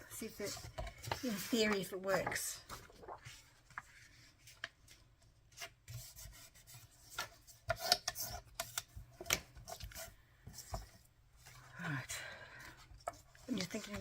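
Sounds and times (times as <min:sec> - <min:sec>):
paper rustling: 0:00.2 - 0:11.7, 0:12.9 - 0:14.0.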